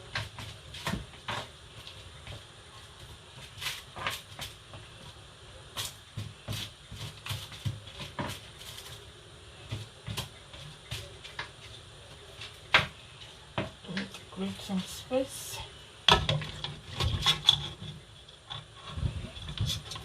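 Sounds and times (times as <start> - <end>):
kitchen things clicking and knocking: 16.1 - 20.0.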